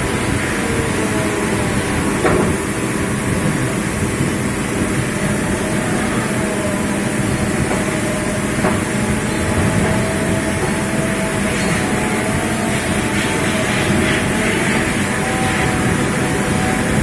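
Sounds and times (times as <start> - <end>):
faint steady whine: 0.0 - 17.0
steady machinery noise: 0.0 - 17.0.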